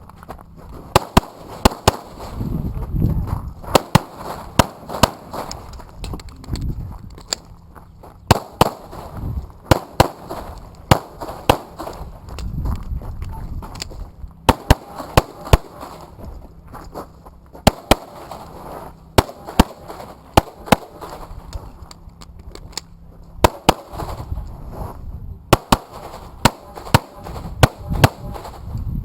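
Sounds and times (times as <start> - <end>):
handgun shots: 8.3 - 8.9, 9.7 - 12.0, 14.5 - 16.1, 23.4 - 24.1, 25.5 - 28.4.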